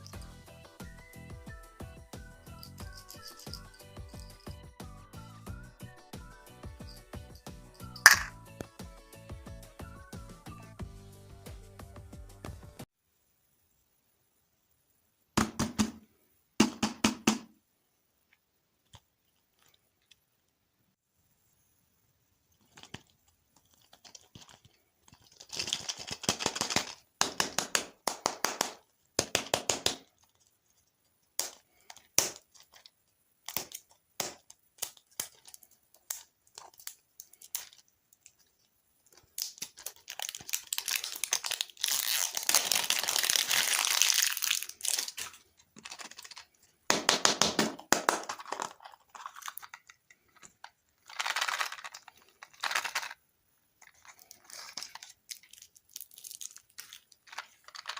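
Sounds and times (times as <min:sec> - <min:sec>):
plastic wrappers crinkling: 0:22.6 - 0:27.0, 0:31.4 - 0:53.2, 0:53.8 - 0:57.9.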